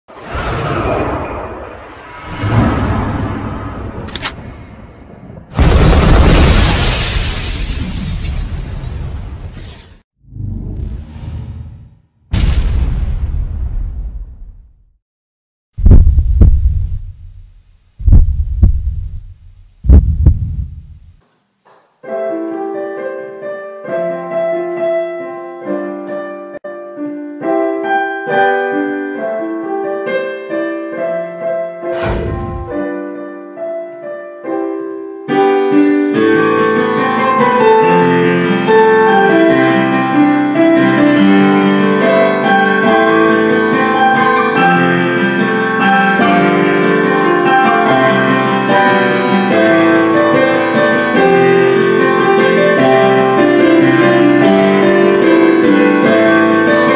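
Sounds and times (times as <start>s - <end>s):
low thump: 15.8s - 21.2s, 32.0s - 32.8s
piano music: 22.0s - 56.9s.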